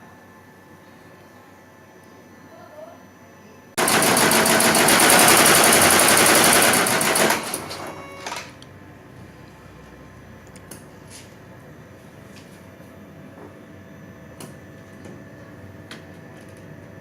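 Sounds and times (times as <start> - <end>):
embroidery machine stitching: 3.8 - 8.5.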